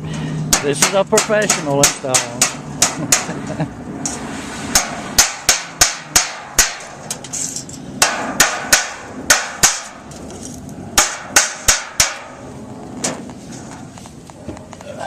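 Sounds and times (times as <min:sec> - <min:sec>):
hammer striking metal: 0:00.5 - 0:03.4, 0:04.7 - 0:07.4, 0:08.0 - 0:10.0, 0:11.0 - 0:12.4.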